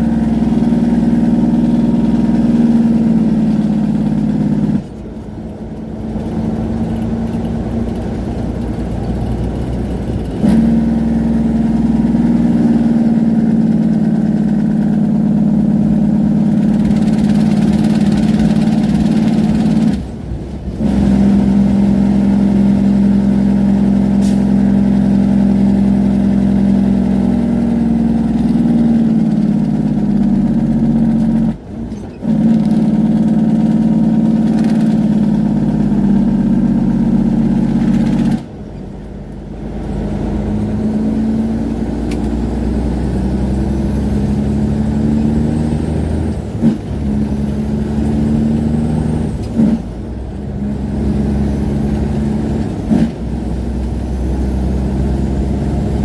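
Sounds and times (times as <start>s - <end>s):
truck engine brake: 24.0s - 25.1s, 28.8s - 33.6s.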